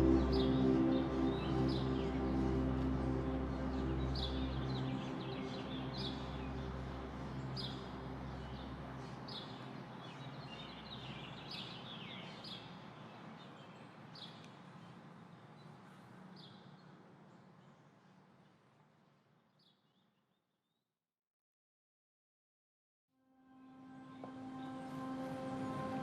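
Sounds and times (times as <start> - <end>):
soft steady rush: 0.0 - 16.3, 23.7 - 26.0
low held music tones: 0.0 - 18.7, 23.4 - 26.0.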